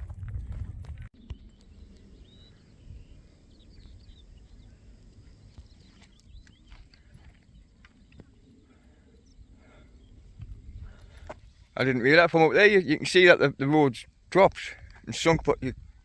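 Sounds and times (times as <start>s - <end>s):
wind rumbling on microphone: 0.0s - 11.8s, 14.0s - 16.0s
bird chirps: 1.2s - 8.6s.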